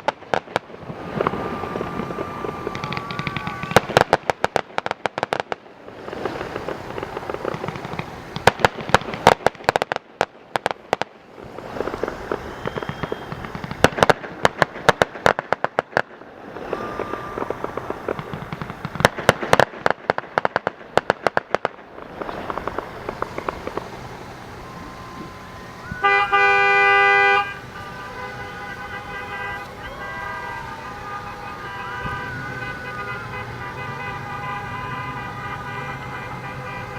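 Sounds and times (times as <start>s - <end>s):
fireworks crackling bangs: 0.0s - 36.9s
rumbling haze: 0.0s - 36.9s
car horn honking: 23.0s - 36.9s.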